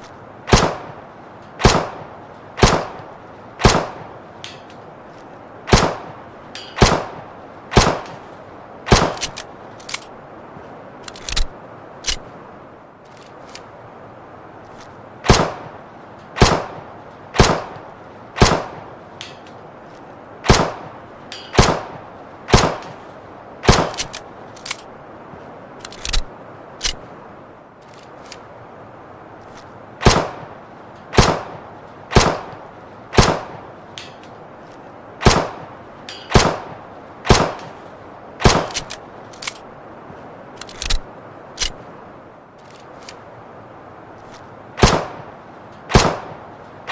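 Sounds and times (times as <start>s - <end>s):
steady hiss: 0.0s - 46.9s
pistol shots: 0.5s - 0.9s, 1.6s - 2.0s, 2.6s - 3.0s, 3.6s - 4.0s, 5.7s - 6.1s, 8.9s - 9.4s, 16.4s - 16.8s, 17.4s - 17.8s, 18.4s - 18.8s, 20.4s - 20.8s, 21.6s - 23.0s, 23.6s - 24.1s, 30.0s - 30.4s, 31.2s - 32.5s, 33.2s - 33.6s, 35.2s - 35.6s, 36.3s - 36.7s, 37.3s - 37.8s, 38.4s - 38.9s, 44.8s - 45.2s, 45.9s - 46.4s.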